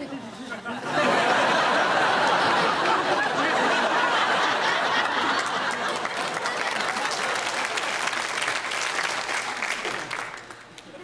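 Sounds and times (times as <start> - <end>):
studio audience laughing: 0.6 - 8.1
people clapping: 0.9 - 11.0.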